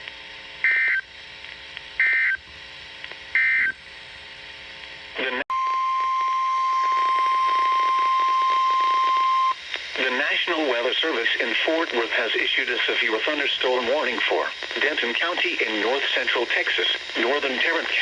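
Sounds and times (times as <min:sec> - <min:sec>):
steady warning alarm tone: 0:00.6 - 0:01.1, 0:02.0 - 0:02.4, 0:03.3 - 0:03.8, 0:05.5 - 0:09.6.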